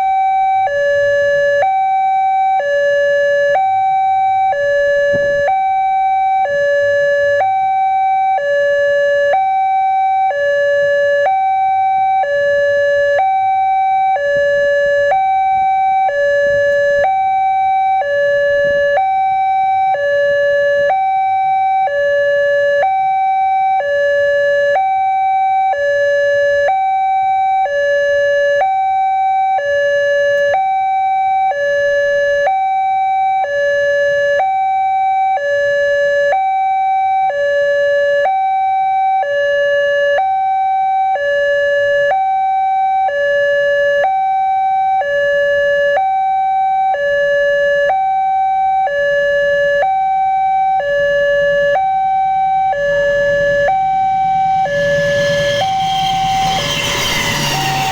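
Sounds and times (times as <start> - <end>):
two-tone crossing siren: 0.0 - 57.9.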